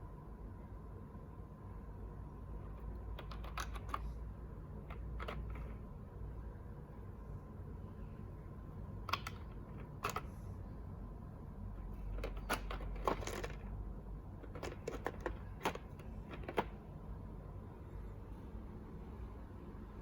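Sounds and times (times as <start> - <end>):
plastic keycaps clicking: 3.1 - 4.1, 4.8 - 5.8, 9.1 - 10.4, 12.1 - 13.7, 14.4 - 16.8.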